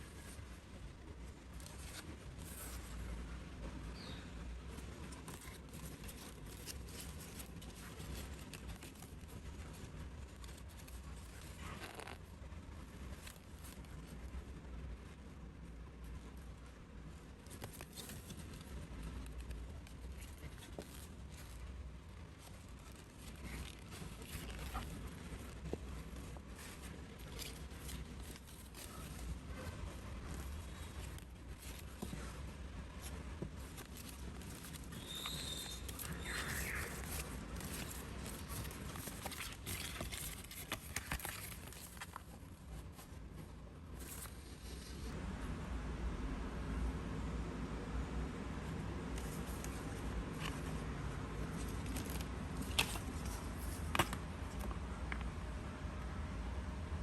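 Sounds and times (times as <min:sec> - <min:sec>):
low steady hum: 0:00.0 - 0:57.0
paper tapping and rustling: 0:22.4 - 0:43.1, 0:51.5 - 0:55.3.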